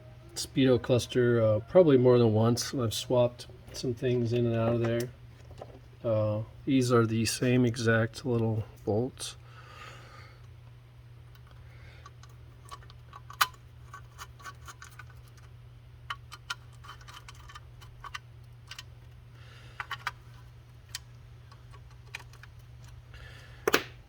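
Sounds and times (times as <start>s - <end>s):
steady low hum: 0.0s - 24.0s
small metal parts clicking: 11.3s - 15.5s, 16.1s - 19.2s, 19.8s - 23.0s.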